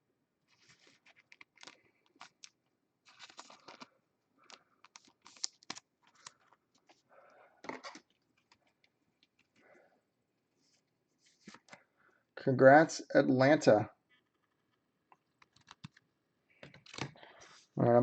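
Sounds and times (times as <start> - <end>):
plastic sleeve rustling: 0.5 - 7.1.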